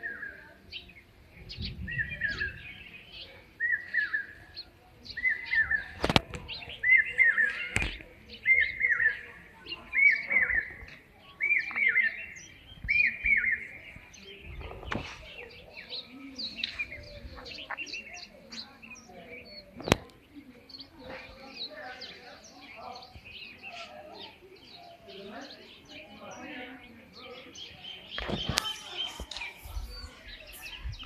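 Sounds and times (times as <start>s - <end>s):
faint high bird chirps: 27.2s - 31.0s.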